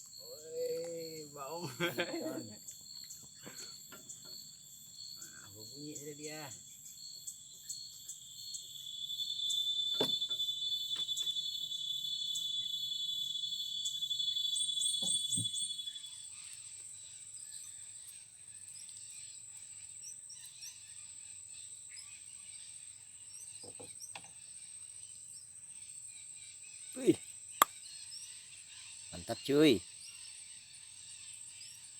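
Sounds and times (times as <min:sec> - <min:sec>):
insects trilling: 0:00.0 - 0:31.9.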